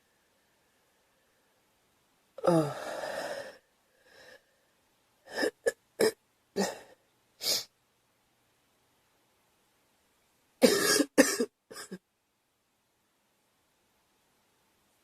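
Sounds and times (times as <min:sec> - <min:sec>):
girl coughing: 0:10.6 - 0:12.0.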